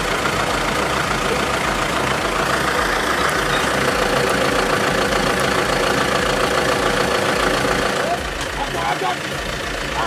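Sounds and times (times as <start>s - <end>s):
heavy vehicle engine running: 0.0s - 10.0s.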